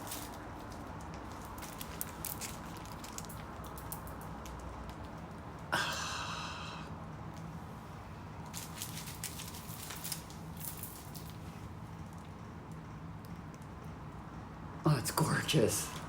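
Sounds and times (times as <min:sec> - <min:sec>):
plastic packaging crinkling: 0:00.0 - 0:04.6, 0:08.5 - 0:11.5.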